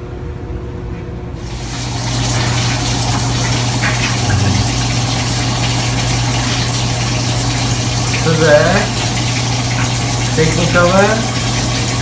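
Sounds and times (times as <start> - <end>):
shower water spraying: 1.4 - 12.0
low hum: 4.3 - 4.9.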